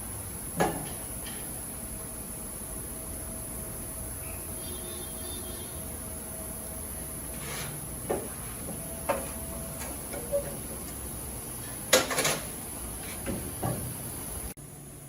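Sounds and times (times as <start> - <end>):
knocks and clanks: 8.0 - 11.0, 11.8 - 12.5, 13.1 - 14.0.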